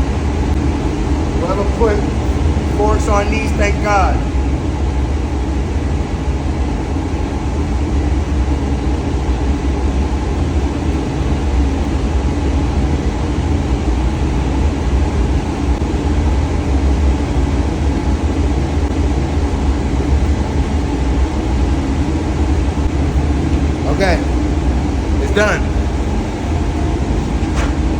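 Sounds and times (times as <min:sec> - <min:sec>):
machinery low drone: 0:00.0 - 0:27.9.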